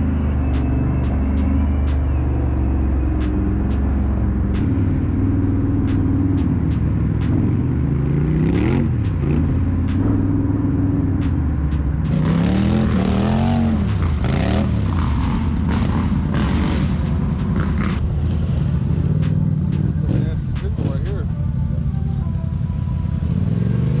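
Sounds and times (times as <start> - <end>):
atv engine revving: 2.2 - 11.3, 12.0 - 19.3
loud rushing noise: 11.2 - 21.1.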